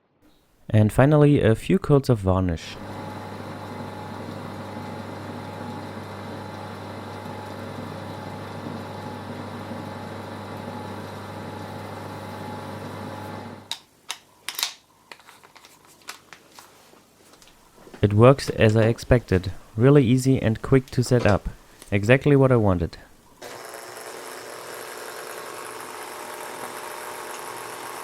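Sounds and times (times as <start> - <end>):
electric drill running: 2.8 - 13.7, 23.4 - 28.0.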